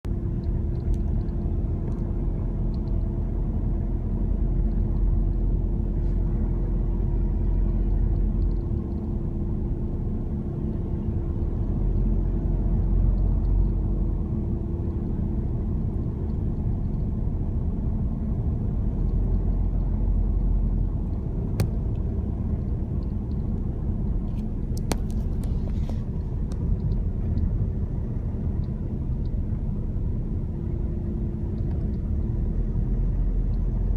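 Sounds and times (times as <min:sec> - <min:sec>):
low engine rumble: 0:00.0 - 0:33.9
steady hum: 0:00.1 - 0:33.9.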